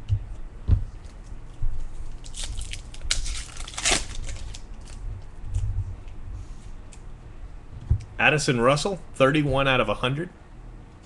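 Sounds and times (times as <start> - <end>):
card pack crinkling: 2.0 - 5.0.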